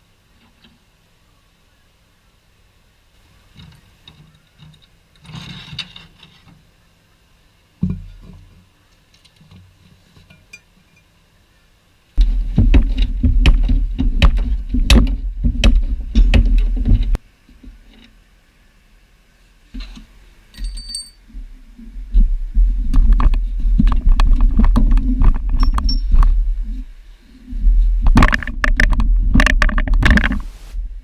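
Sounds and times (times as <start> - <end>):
rapid metal hammering: 12.2 - 17.2
knock: 12.6 - 17.2
light metal clinks: 20.5 - 21.3.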